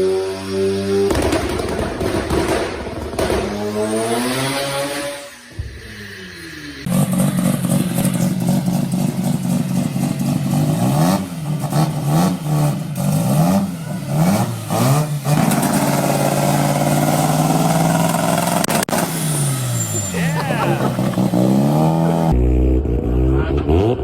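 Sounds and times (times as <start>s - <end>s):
rotary engine revving: 3.2s - 24.0s
sharp exhaust pops: 6.9s - 19.4s.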